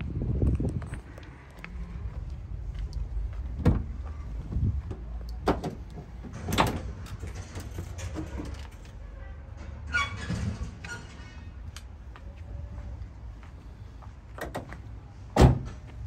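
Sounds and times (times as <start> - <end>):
low steady rumble: 0.0 - 8.8
van doors slamming: 3.5 - 8.0, 14.4 - 15.9.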